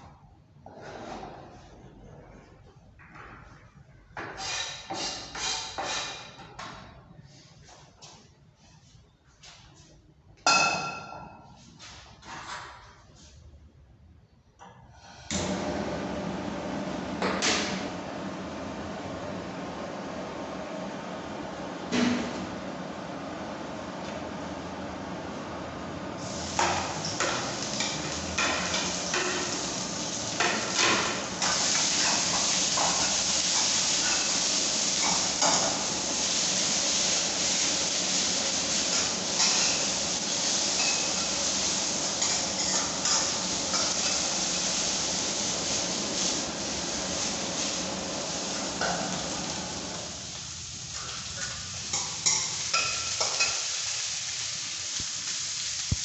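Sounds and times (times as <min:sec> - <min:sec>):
utensil scraping a pan: 0:04.3 - 0:06.4
food sizzling in a hot pan: 0:26.2 - 0:56.0.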